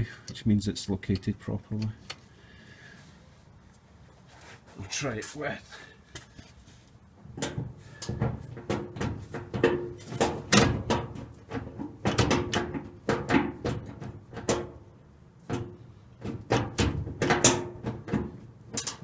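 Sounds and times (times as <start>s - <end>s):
shifter linkage clicks and clunks: 15.5s - 19.0s.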